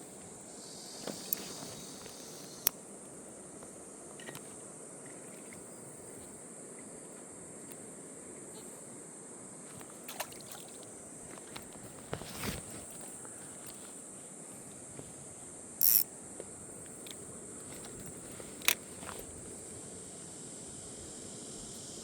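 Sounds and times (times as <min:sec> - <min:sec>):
stream water running: 0:00.0 - 0:08.0, 0:09.6 - 0:13.8, 0:15.7 - 0:22.0
crickets chirping: 0:00.0 - 0:22.0
sharp clicks or splashes: 0:10.1 - 0:10.9.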